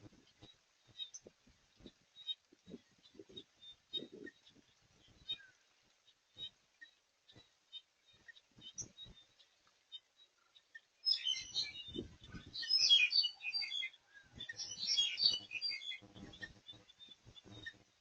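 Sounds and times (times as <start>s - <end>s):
small birds chirping: 0.0s - 18.0s
soft low thumps: 11.8s - 12.6s.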